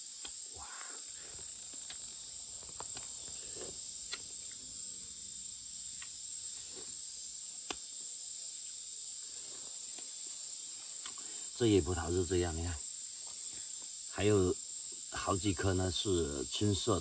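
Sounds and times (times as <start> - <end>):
crickets trilling: 0.0 - 17.0
sharp clicks and snaps: 0.2 - 0.4, 1.8 - 2.1, 4.1 - 4.3, 7.6 - 7.8.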